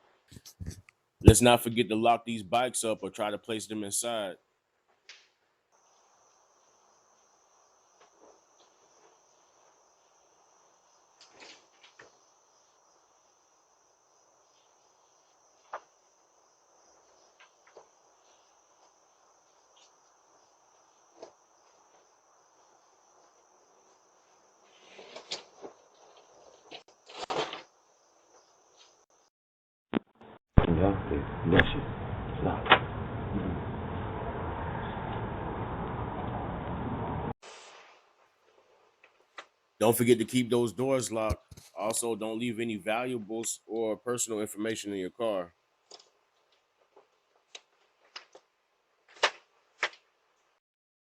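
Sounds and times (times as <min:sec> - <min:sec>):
rustling: 0:04.8 - 0:29.3, 0:45.8 - 0:50.6
faint high-pitched insect-like drone: 0:05.7 - 0:29.3.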